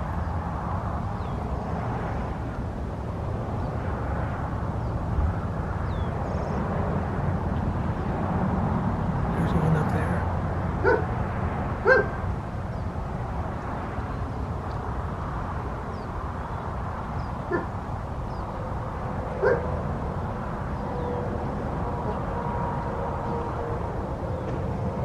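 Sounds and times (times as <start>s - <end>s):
dog barking: 10.8s - 11.2s, 11.8s - 12.2s, 19.4s - 19.7s.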